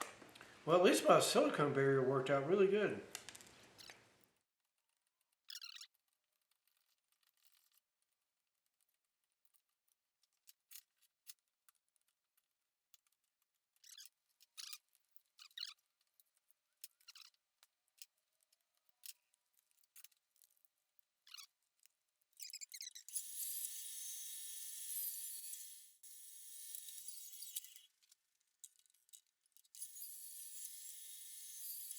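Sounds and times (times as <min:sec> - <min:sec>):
faint scratchy clicks: 0:03.1 - 0:04.1.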